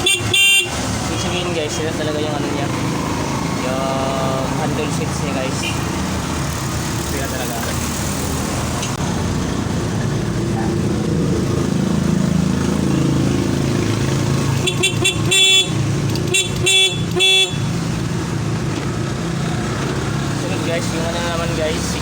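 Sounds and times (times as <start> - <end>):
scooter horn beeping: 0.0 - 0.9, 14.6 - 17.8.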